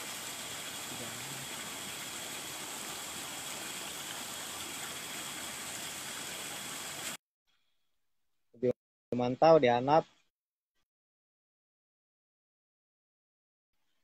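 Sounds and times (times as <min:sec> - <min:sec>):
steady hiss: 0:00.0 - 0:07.2.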